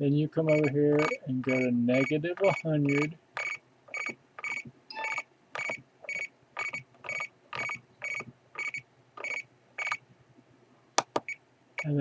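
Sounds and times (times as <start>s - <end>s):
radio transmitter beeping: 0.5s - 3.1s.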